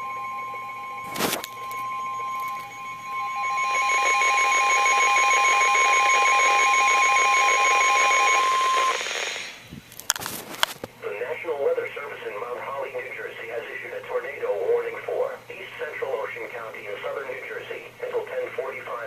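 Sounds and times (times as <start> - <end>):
rapidly pulsing beep: 0.0 - 9.6
steady loud alarm tone: 0.0 - 9.6
radio static hiss: 1.0 - 2.8, 3.5 - 19.0.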